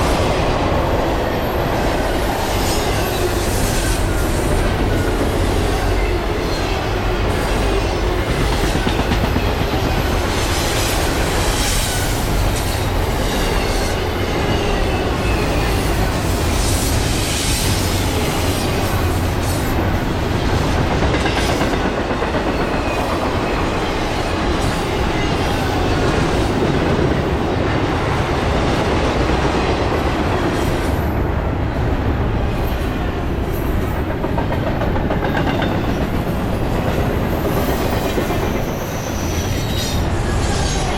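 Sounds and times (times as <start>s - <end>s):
freight train wheels rumbling: 0.0s - 40.9s
faint high wheel squeal: 37.5s - 40.9s.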